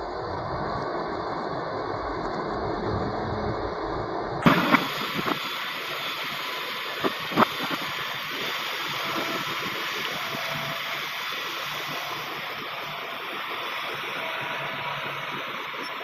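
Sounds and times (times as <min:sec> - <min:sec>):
machinery engine rumble: 0:00.0 - 0:16.0
steady rushing hiss: 0:04.4 - 0:16.0.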